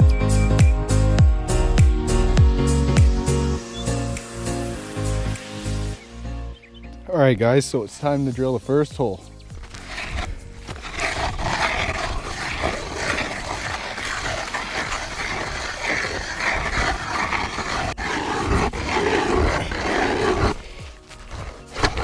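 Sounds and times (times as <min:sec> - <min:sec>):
ice auger grinding roar: 0:09.8 - 0:22.0.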